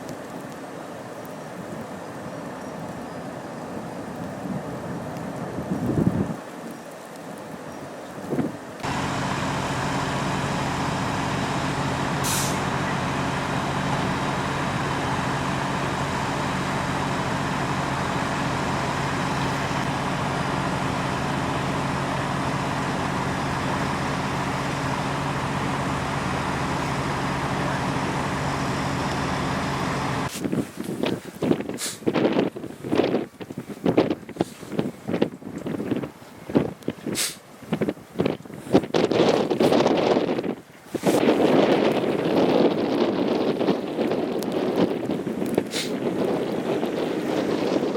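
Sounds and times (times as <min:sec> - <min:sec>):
large vehicle engine running: 0:08.8 - 0:30.3
short hiss: 0:12.2 - 0:12.6, 0:31.7 - 0:32.1, 0:37.1 - 0:37.4, 0:45.7 - 0:46.0.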